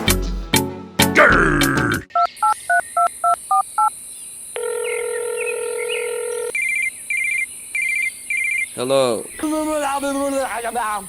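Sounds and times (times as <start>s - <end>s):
keypad dialing beeps: 2.2s - 3.9s
phone ringing in trills: 4.6s - 6.5s.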